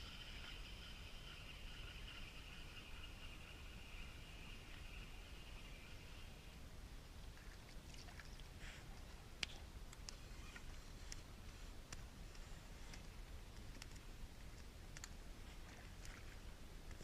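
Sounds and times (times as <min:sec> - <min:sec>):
faint clicks and ticks: 0:07.3 - 0:17.0.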